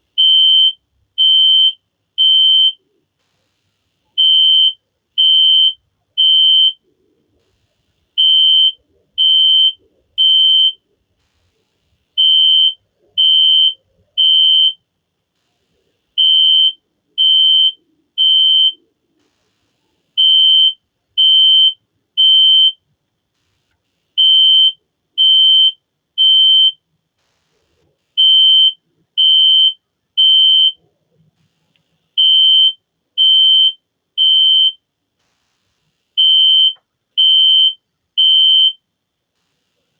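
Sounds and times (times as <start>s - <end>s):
fire alarm horn beeping: 8.2s - 10.8s, 12.2s - 14.8s, 16.2s - 18.8s, 20.2s - 22.8s, 28.2s - 30.8s, 32.2s - 34.8s, 36.2s - 38.8s.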